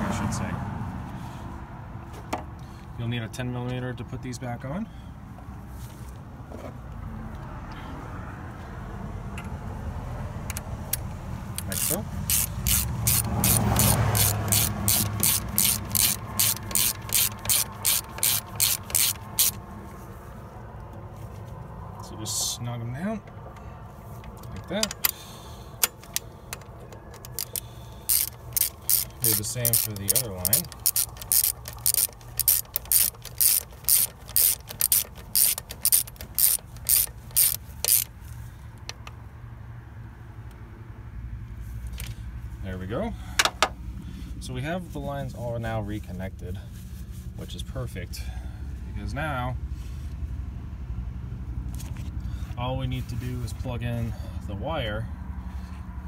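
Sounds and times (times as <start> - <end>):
socket ratchet clicking: 10.5 - 19.6, 24.2 - 38.1, 38.8 - 39.2.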